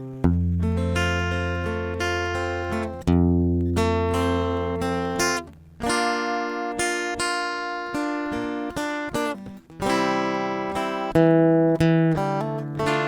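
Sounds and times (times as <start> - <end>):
acoustic guitar playing: 0.0 - 13.0.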